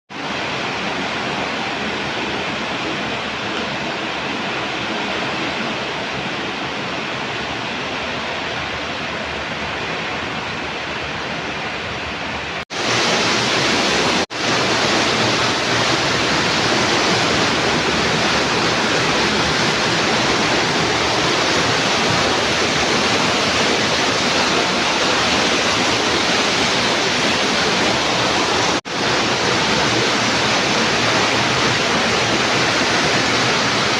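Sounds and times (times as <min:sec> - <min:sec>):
heavy rain pouring: 0:00.1 - 0:33.9.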